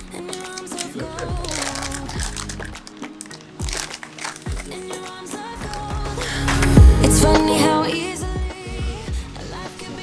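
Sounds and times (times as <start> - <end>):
instrumental pop music: 0.0 - 10.0
deep kick drums: 1.3 - 1.6, 6.8 - 7.4, 8.2 - 9.4.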